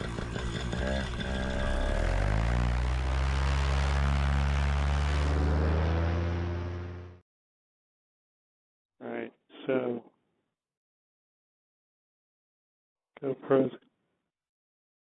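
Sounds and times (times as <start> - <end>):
paramotor engine and propeller: 0.0 - 7.2.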